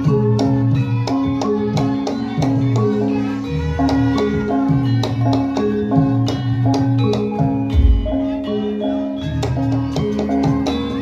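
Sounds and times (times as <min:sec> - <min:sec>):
mallet percussion music: 0:00.0 - 0:11.0
deep drum thump: 0:07.8 - 0:08.4.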